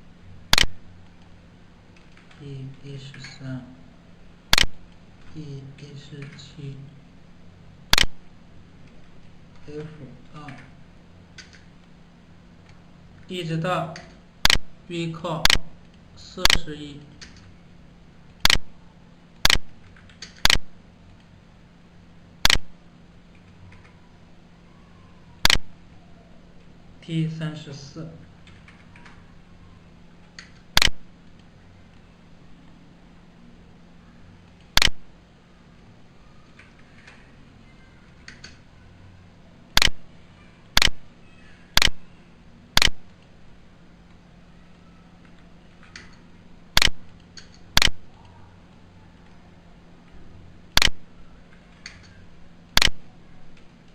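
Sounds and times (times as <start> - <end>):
faint steady hum: 0.0 - 53.9
loud sharp clicks: 0.5 - 0.8, 4.5 - 4.8, 7.9 - 8.2, 14.4 - 14.6, 18.4 - 18.7, 19.4 - 20.7, 22.4 - 22.7, 25.4 - 25.7, 30.4 - 31.0, 34.5 - 35.0, 39.7 - 40.0, 40.7 - 41.0, 41.7 - 42.0, 42.8 - 43.2, 46.8 - 48.0, 50.7 - 51.0, 51.7 - 53.0
sharp clicks: 0.5 - 1.3, 4.5 - 5.4, 7.9 - 8.2, 14.0 - 14.7, 18.3 - 18.7, 19.4 - 21.3, 22.4 - 22.7, 25.4 - 25.7, 30.2 - 32.0, 34.4 - 35.0, 38.1 - 38.7, 39.7 - 40.0, 40.7 - 41.0, 41.7 - 42.0, 42.7 - 43.3, 44.1 - 48.4, 50.0 - 53.9.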